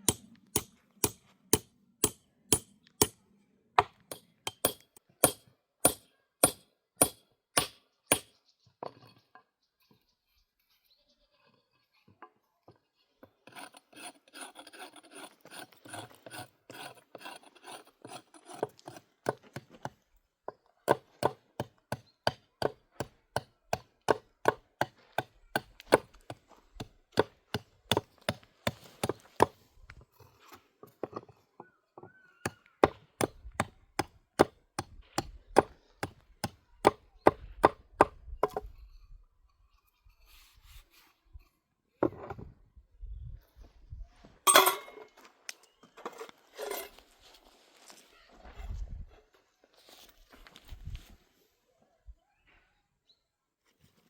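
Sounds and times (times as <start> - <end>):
rubbing and scraping: 13.5 - 19.1.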